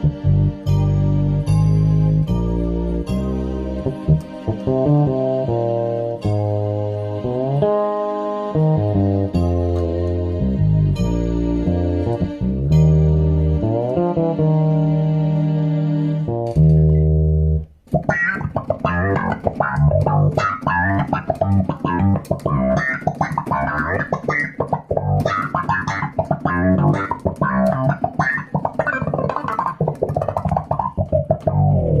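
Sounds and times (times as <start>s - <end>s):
electric bass guitar: 0.0s - 32.0s.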